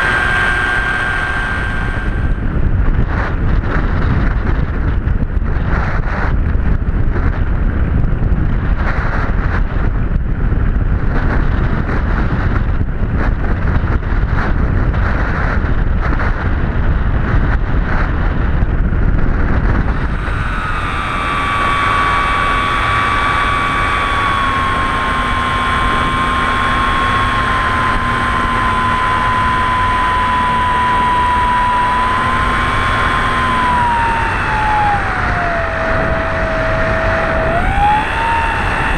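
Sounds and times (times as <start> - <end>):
model glider motor whining: 0.0 - 4.4, 19.7 - 38.9
wind buffeting microphone: 0.0 - 38.9.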